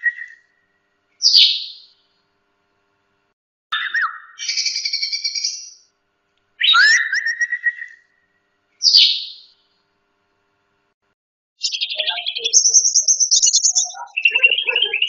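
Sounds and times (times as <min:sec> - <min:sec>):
songbird singing: 0:00.0 - 0:00.4, 0:01.2 - 0:02.0, 0:03.8 - 0:05.8, 0:06.6 - 0:08.0, 0:08.8 - 0:09.6, 0:11.6 - 0:15.0.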